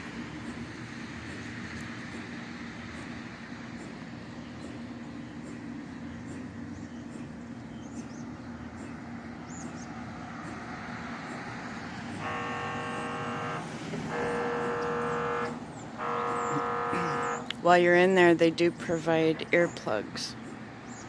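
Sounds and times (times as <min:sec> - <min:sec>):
steady low hum: 0:00.0 - 0:21.0
mri scanner buzzing: 0:11.1 - 0:17.5.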